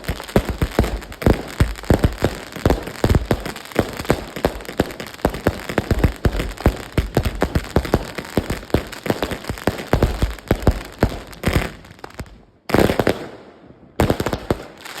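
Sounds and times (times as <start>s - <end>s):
firework cake bangs: 0.0s - 11.8s
firework crackle: 0.0s - 13.4s, 14.0s - 15.0s.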